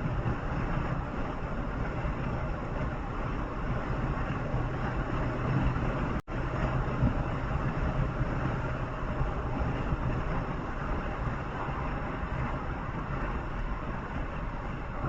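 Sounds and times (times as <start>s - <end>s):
vehicle engine and tyre rumble: 0.0s - 15.0s.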